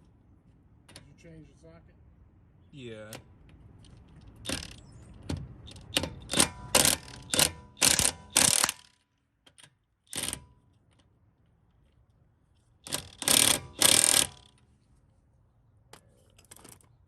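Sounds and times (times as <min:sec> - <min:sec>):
socket ratchet clicking: 0:04.4 - 0:04.8, 0:05.6 - 0:08.9, 0:12.9 - 0:14.6.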